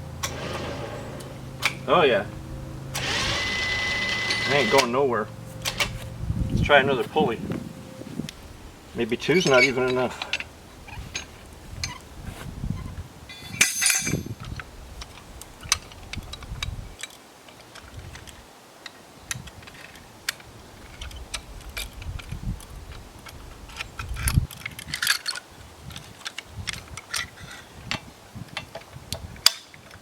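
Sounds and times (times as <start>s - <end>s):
metal pulley hardware clinking: 9.2s - 10.5s, 13.3s - 14.5s.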